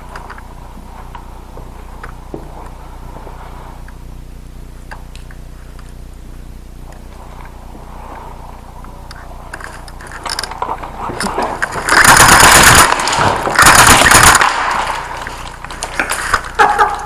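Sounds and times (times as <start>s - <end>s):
airsoft shotgun bursts: 11.9s - 15.2s.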